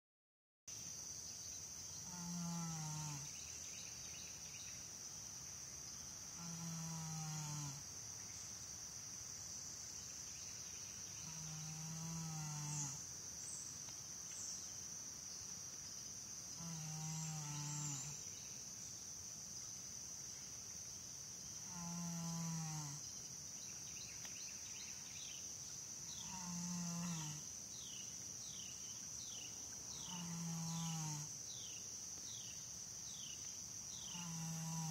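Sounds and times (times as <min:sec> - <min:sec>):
horse snoring: 0:34.2 - 0:34.9.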